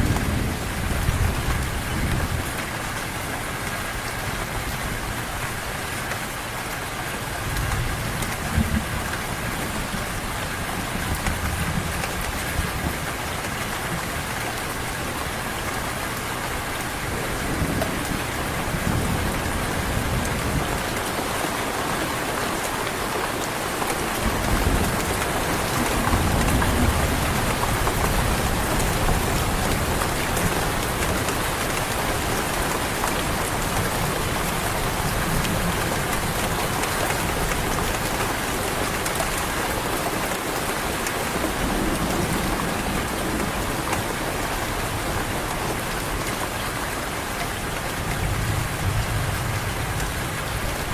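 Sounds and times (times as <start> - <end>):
heavy rain pouring: 0.0 - 50.9.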